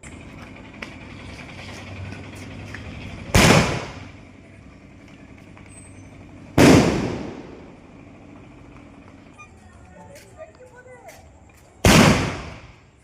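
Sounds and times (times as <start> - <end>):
fireworks bangs: 2.5 - 4.2, 6.5 - 7.9, 11.8 - 12.9.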